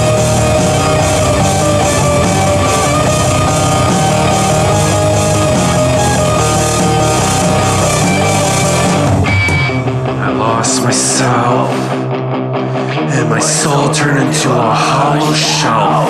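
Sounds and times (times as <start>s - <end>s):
rock band playing with guitar: 0.0s - 16.0s.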